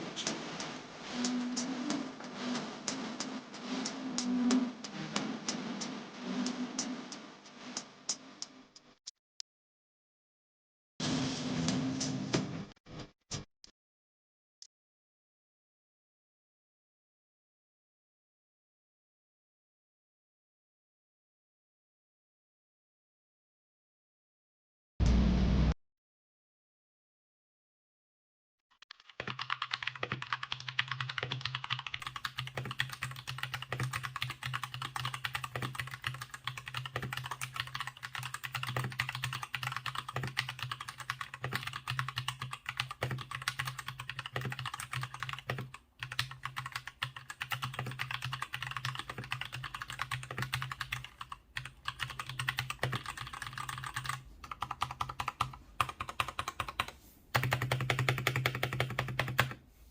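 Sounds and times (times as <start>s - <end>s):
mechanical keyboard typing: 28.9s - 59.6s.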